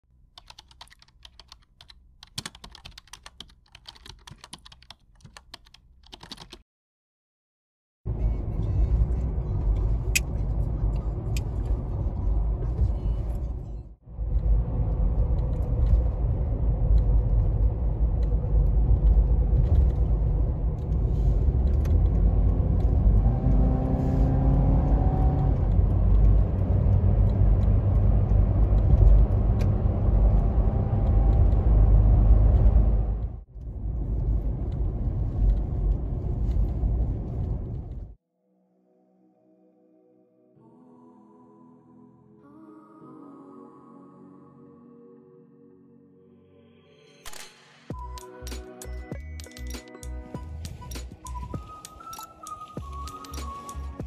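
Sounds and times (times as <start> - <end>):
keyboard typing: 0.4 - 6.6, 48.0 - 54.0
road vehicle engine rumble: 8.1 - 38.2.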